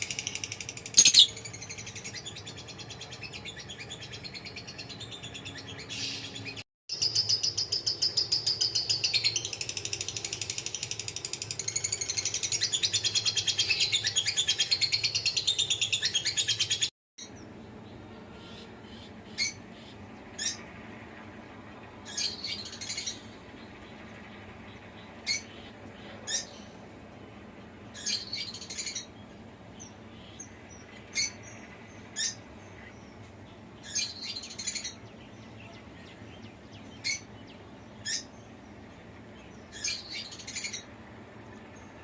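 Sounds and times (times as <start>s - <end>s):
small birds twittering: 0.0s - 42.0s
single sharp bird chirps: 1.0s - 1.4s.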